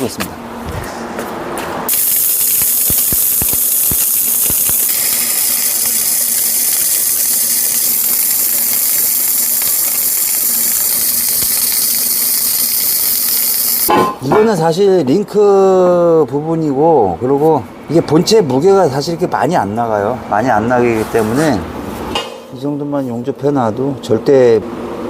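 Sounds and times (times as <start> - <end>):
sharp ticks: 1.9 - 13.9
welding arc hissing: 1.9 - 13.9.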